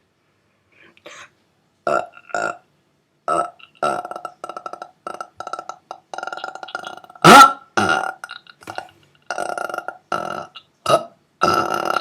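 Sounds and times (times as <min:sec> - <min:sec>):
person burping: 0:03.3 - 0:12.0.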